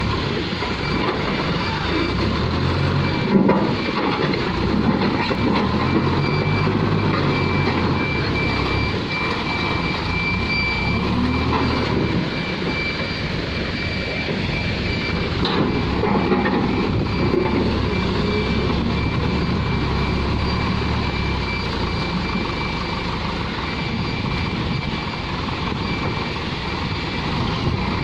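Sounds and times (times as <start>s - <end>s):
backhoe loader diesel engine: 0.0s - 28.0s.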